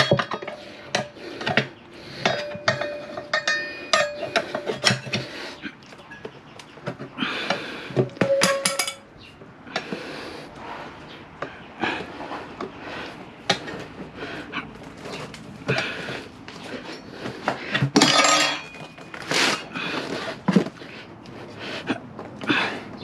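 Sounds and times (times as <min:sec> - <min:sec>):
hand tools knocking on wheel rim: 0:08.0 - 0:09.0.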